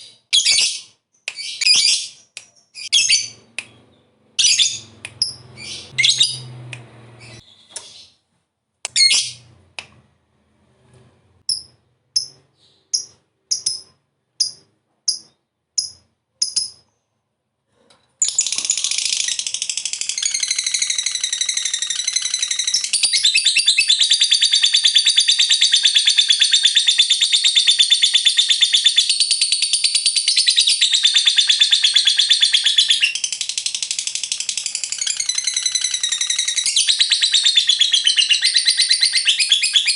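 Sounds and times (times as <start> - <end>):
lovebird chirping: 0.0 - 6.6, 7.2 - 8.2, 8.9 - 9.5, 11.5 - 17.2, 18.2 - 39.9
lovebird chattering trill: 11.5 - 16.8.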